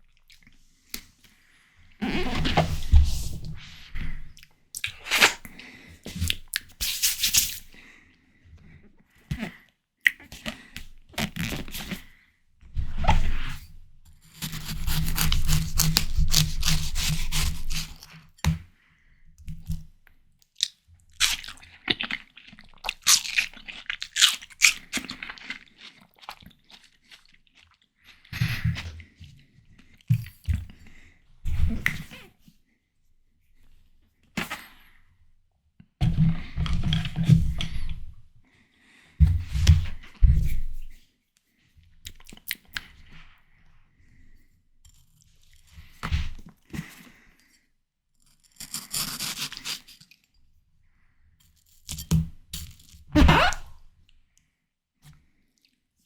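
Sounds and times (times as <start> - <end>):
watermelon biting and chewing: 6.1 - 7.6, 14.2 - 18.3, 20.5 - 28.8, 48.5 - 50.2.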